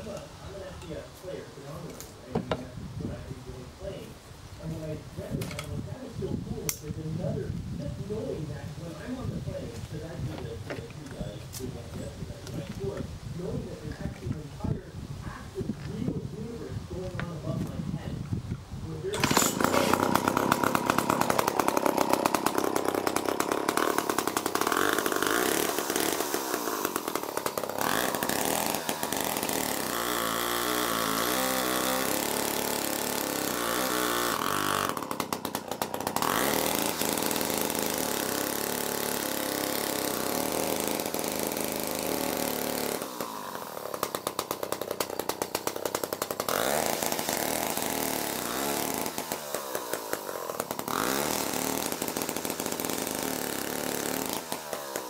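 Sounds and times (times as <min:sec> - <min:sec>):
chainsaw running at high revs: 0:19.1 - 0:55.0.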